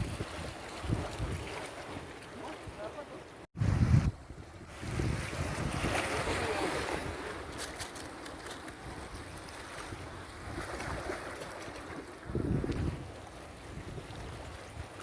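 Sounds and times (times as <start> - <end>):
wind buffeting microphone: 0.0 - 2.1, 3.6 - 7.6, 12.0 - 15.0
sea water washing: 0.0 - 3.5, 4.5 - 15.0.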